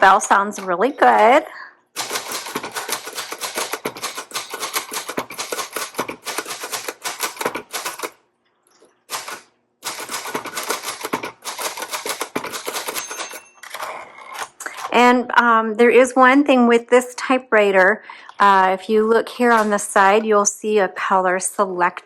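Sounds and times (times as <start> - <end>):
manual typewriter typing: 2.0 - 8.2, 9.1 - 15.1, 19.3 - 20.2.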